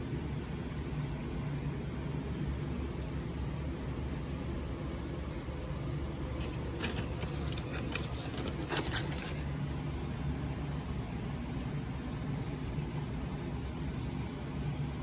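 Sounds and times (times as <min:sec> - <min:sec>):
handling rustles and clicks: 0:06.4 - 0:09.8.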